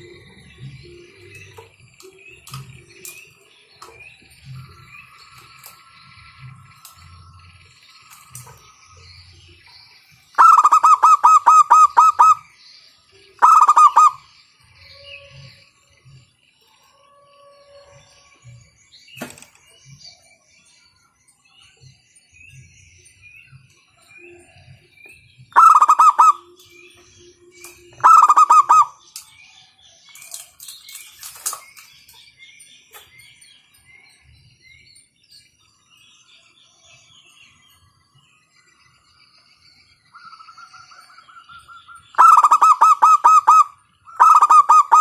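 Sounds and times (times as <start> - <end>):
small birds twittering: 0.0 - 45.0
dove cooing: 10.4 - 12.4, 13.4 - 14.2, 25.6 - 26.5, 28.0 - 29.0, 42.2 - 45.0.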